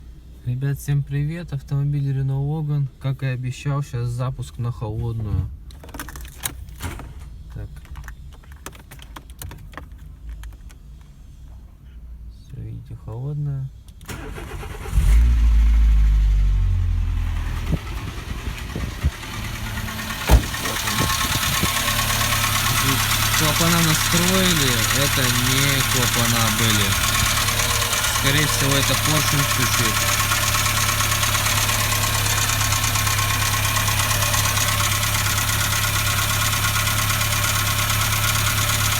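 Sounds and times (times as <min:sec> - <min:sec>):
car engine starting and idling: 0:13.8 - 0:38.9
sharp engine knocks: 0:17.7 - 0:33.3.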